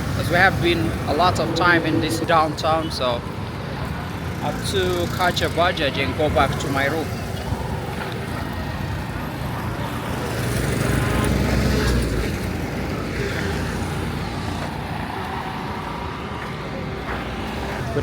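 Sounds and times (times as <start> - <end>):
vehicle passing close: 0.0 - 5.1
traffic engine and road rumble: 0.0 - 18.0.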